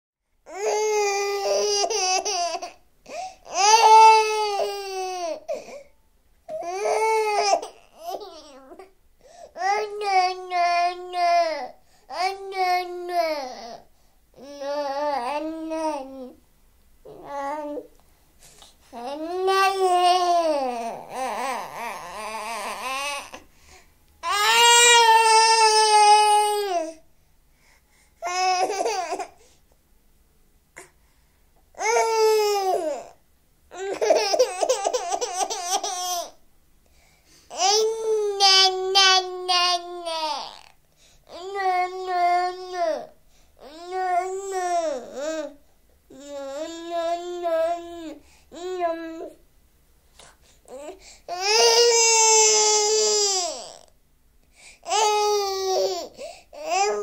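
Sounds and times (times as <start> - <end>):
baby crying: 0.5 - 5.7, 6.5 - 8.9, 31.8 - 36.4, 50.7 - 53.9, 54.9 - 57.0.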